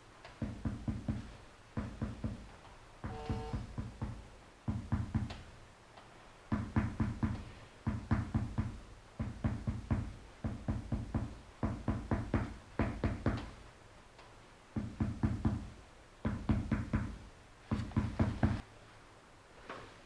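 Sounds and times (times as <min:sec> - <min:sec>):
hammer tapping rapidly on body: 0:00.4 - 0:05.4, 0:06.5 - 0:13.5.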